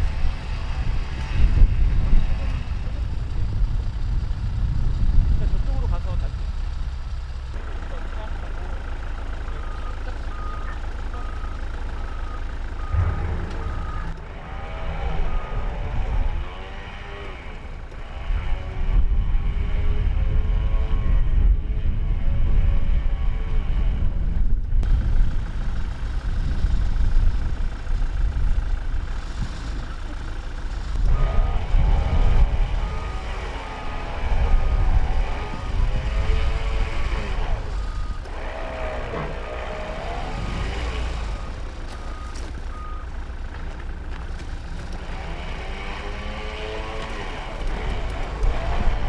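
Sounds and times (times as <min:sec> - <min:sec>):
truck engine rumbling: 0:00.0 - 0:49.0
reversing alarm beeping: 0:09.4 - 0:17.3, 0:31.2 - 0:43.1.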